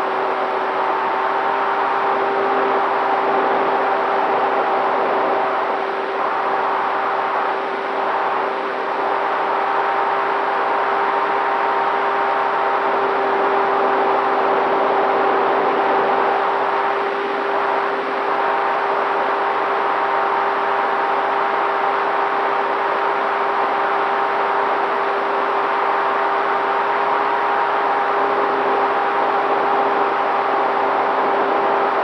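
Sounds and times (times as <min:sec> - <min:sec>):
electric motor and propeller whine: 0:00.0 - 0:32.0.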